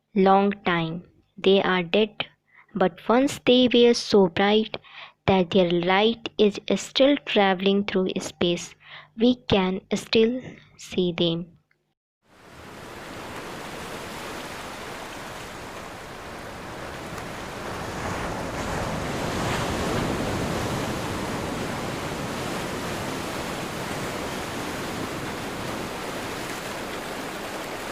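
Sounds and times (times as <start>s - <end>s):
ocean waves rushing in surf: 12.3s - 27.9s.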